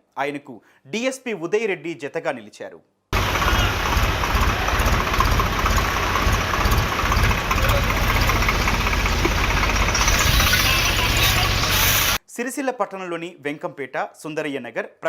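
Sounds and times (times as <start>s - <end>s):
tractor engine knocking: 3.2s - 12.2s.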